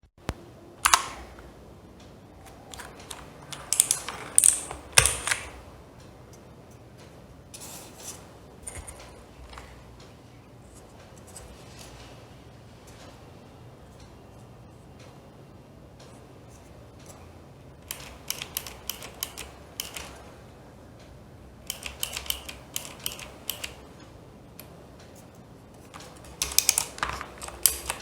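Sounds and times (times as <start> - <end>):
mechanical keyboard clicking: 0.8 - 1.5, 2.4 - 5.6, 17.8 - 20.2, 21.6 - 23.8, 25.8 - 28.0.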